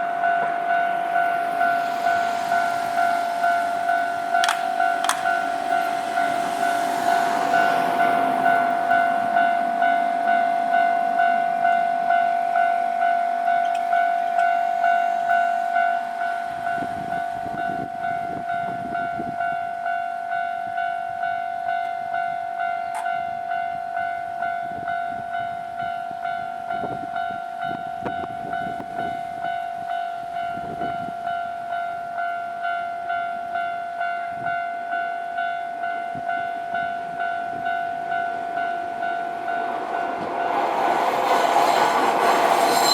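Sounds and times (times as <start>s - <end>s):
level-crossing warning bell: 0.0s - 42.9s
passing train rumble and clatter: 0.0s - 42.9s.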